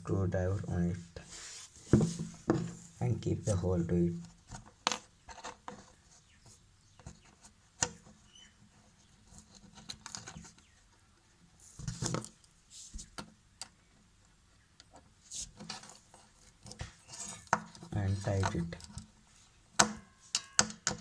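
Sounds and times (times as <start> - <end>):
scraping rustle: 1.2 - 10.8, 15.0 - 20.6
light clicks and taps of tools: 19.8 - 21.0.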